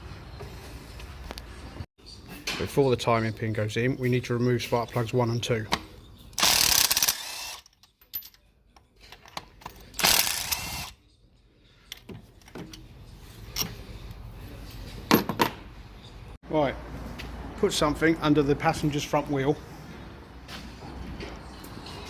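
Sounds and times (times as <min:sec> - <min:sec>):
tools clicking and knocking: 0:11.9 - 0:12.9.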